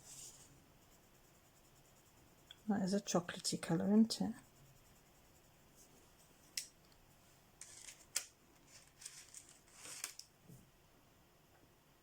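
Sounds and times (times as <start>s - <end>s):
pencil scratching on paper: 0.0s - 6.4s.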